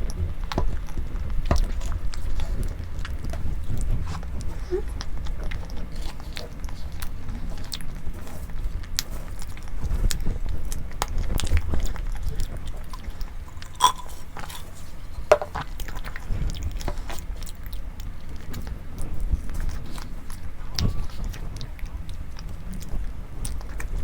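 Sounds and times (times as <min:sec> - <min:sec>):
person chewing: 0:11.2 - 0:18.7
wet mouth clicks: 0:13.0 - 0:15.6.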